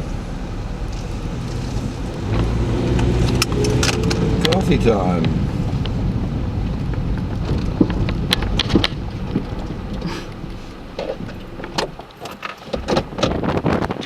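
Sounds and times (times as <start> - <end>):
wind buffeting the microphone: 1.1 - 14.0.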